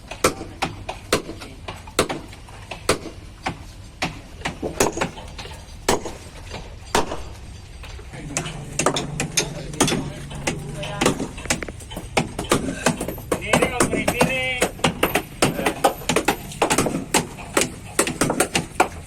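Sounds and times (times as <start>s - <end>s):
low machine hum: 5.1s - 19.0s
low steady motor tone: 7.3s - 13.1s.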